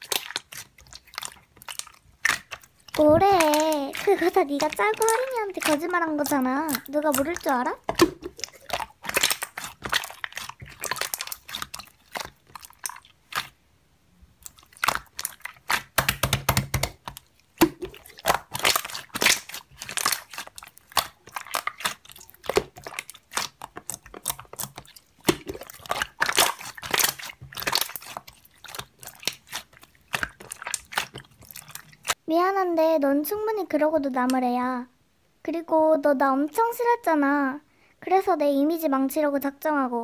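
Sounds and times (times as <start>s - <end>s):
slime crackling and popping: 0.0s - 13.6s, 14.4s - 32.2s.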